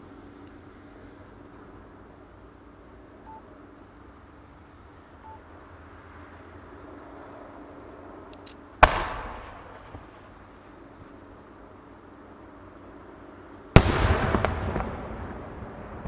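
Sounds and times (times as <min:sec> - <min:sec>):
low steady background noise: 0:00.0 - 0:16.0
short electronic beeps: 0:03.3 - 0:03.5, 0:05.2 - 0:05.5
firework boom: 0:13.8 - 0:16.0.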